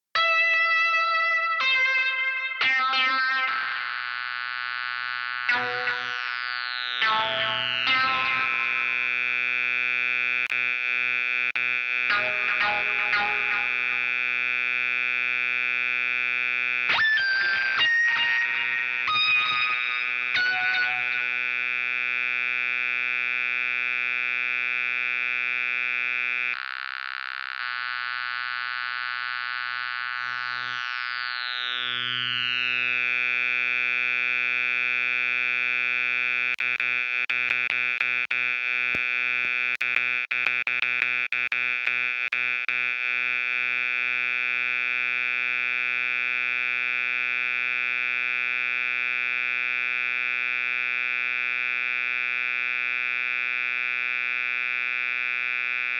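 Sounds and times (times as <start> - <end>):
synthesizer droning tone: 5.5 - 10.2, 12.1 - 14.8, 17.0 - 21.7, 30.2 - 35.0
clicks and stutters: 10.4 - 10.7, 36.5 - 42.8.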